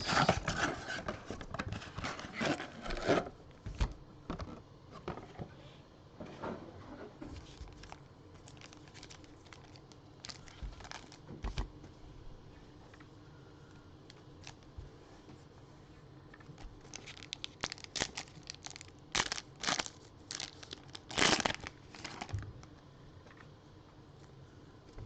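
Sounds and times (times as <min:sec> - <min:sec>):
card wrappers crinkling: 0:07.4 - 0:11.6, 0:14.4 - 0:14.7, 0:16.5 - 0:22.7.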